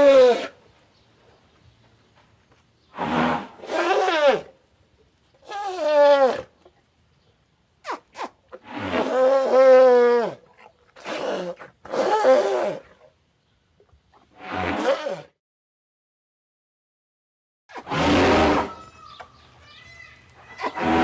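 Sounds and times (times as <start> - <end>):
elephant trumpeting: 2.9 - 4.5, 17.7 - 19.2, 20.5 - 21.0.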